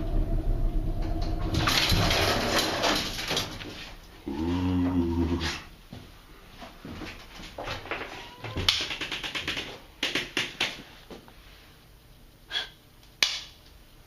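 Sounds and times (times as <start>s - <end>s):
elevator mechanism clicking and rattling: 0.0s - 3.7s.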